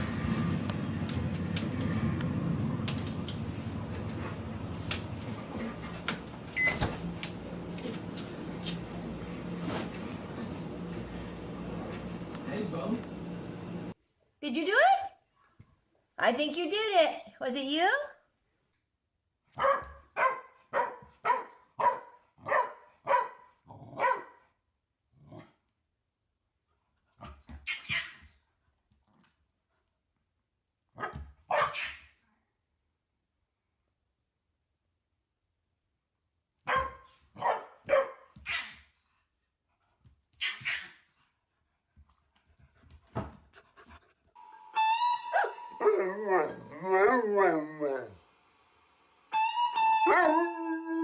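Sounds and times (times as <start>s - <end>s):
dog barking: 19.6s - 24.4s, 31.0s - 32.1s, 36.6s - 38.8s, 40.4s - 41.0s, 45.3s - 45.6s.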